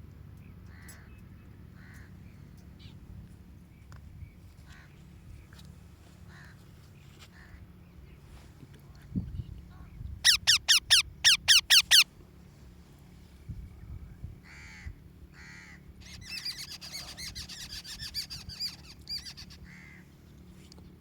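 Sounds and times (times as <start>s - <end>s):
parrot calling: 10.2s - 12.0s.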